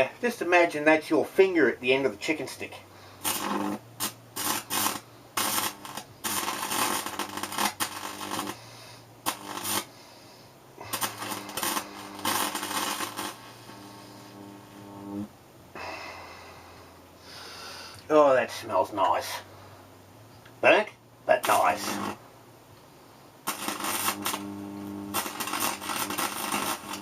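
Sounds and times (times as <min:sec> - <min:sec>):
electric arc buzzing and crackling: 0:01.4 - 0:15.3, 0:20.6 - 0:22.3, 0:23.4 - 0:27.0.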